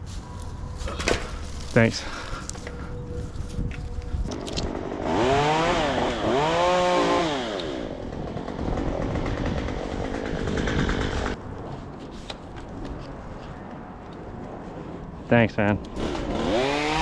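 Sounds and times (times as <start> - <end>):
chainsaw revving: 4.7 - 11.4, 16.0 - 17.0.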